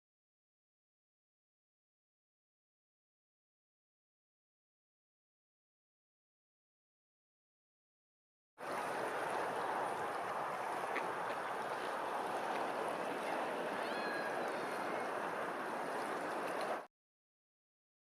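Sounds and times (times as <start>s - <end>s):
running splashing water: 8.6s - 16.9s.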